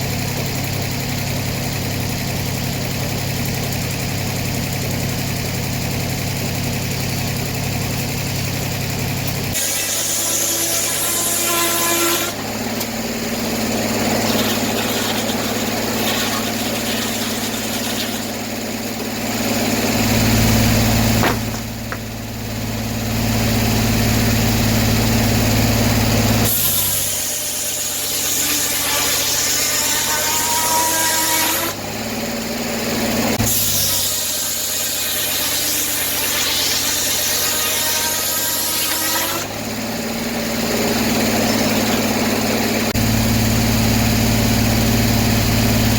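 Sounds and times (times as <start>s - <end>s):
sawmill engine running: 0.0s - 45.9s
saw cutting through log: 9.2s - 22.0s, 25.1s - 45.0s.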